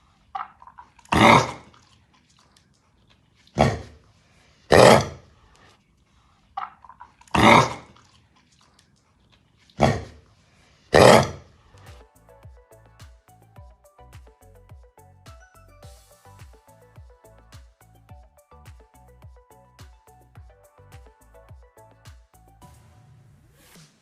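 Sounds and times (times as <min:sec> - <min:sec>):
dog coughing: 0:01.1 - 0:01.7, 0:03.6 - 0:04.0, 0:04.7 - 0:05.2, 0:07.3 - 0:07.9, 0:09.8 - 0:10.2, 0:10.9 - 0:11.5.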